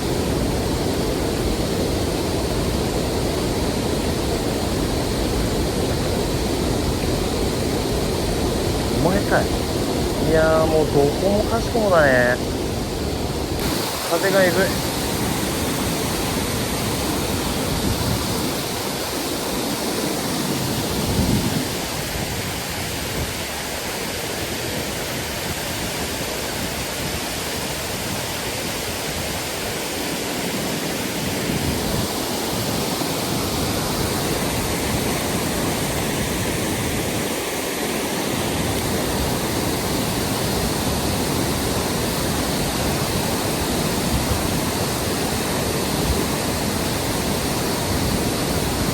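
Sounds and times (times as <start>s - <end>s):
stream water rushing: 0.0s - 48.9s
wind buffeting microphone: 14.7s - 29.8s.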